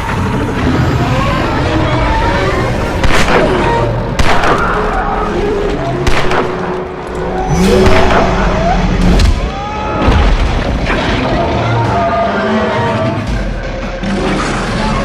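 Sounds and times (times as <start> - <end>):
horror film music: 0.0 - 15.0
loud sharp booming impacts: 7.6 - 11.2.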